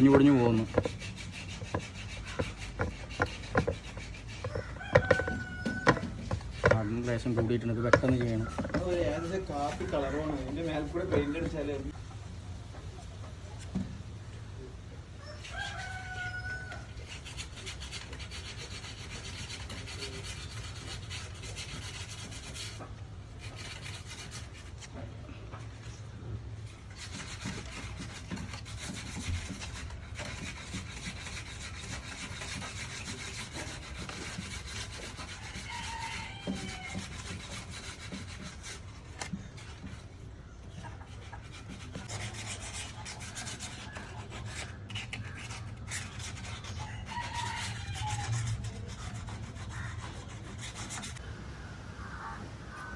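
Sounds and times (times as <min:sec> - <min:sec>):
putty blade scraping wood: 0:00.0 - 0:12.0, 0:15.4 - 0:51.2.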